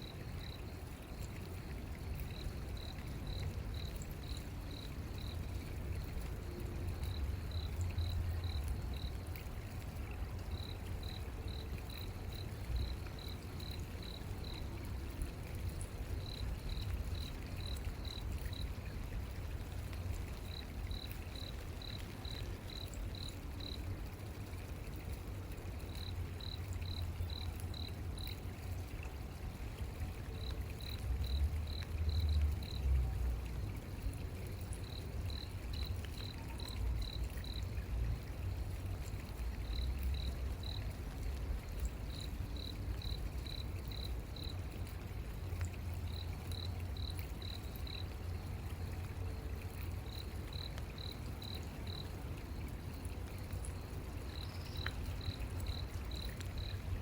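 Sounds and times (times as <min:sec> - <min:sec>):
cricket chirping: 0:34.8 - 0:37.6, 0:41.8 - 0:44.6, 0:46.1 - 0:48.1, 0:49.7 - 0:56.8.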